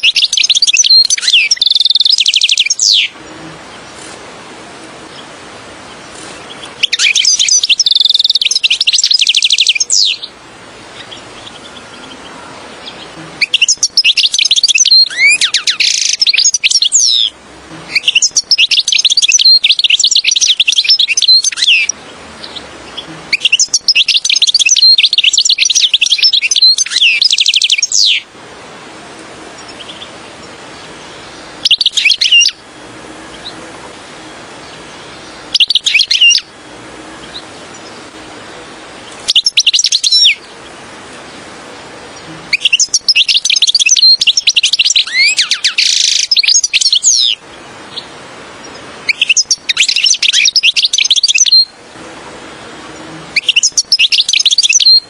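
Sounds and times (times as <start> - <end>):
goldfinch twittering song: 0.0 - 4.2, 5.1 - 28.3, 29.6 - 32.6, 34.6 - 36.5, 37.2 - 41.5, 42.2 - 51.8, 53.4 - 55.0.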